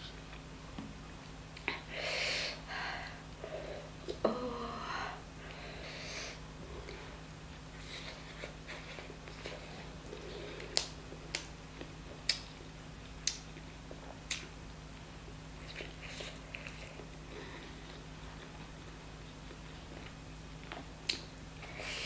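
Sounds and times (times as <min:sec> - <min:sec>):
steady low hum: 0:00.0 - 0:22.0
person chewing food: 0:08.0 - 0:14.5, 0:15.6 - 0:21.3.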